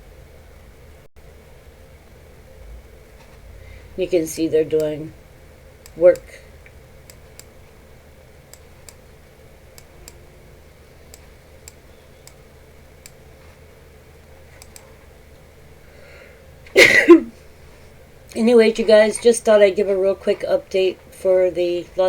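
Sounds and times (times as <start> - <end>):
faint room hum: 0.0 - 22.0
faint in-breath: 3.5 - 4.0, 15.8 - 16.5
soft clicks: 4.8 - 5.0, 5.8 - 7.6, 8.5 - 9.1, 9.7 - 10.2, 11.1 - 13.6, 14.5 - 15.5
woman sneezing: 16.8 - 17.3.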